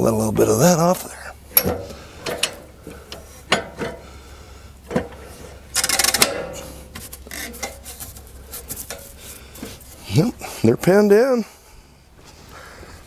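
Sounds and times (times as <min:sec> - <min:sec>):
metal clamp clicks and knocks: 0:01.5 - 0:04.0, 0:05.8 - 0:07.8
rapid ratchet clicks: 0:05.8 - 0:06.3.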